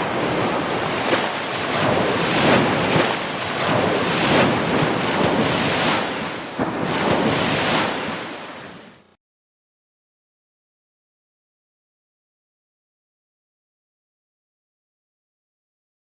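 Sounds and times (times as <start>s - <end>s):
ocean surf washing in: 0.0s - 9.1s.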